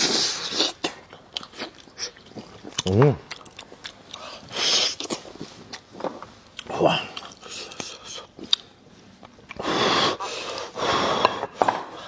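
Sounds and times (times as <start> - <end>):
loud noisy breaths: 9.6 - 12.0.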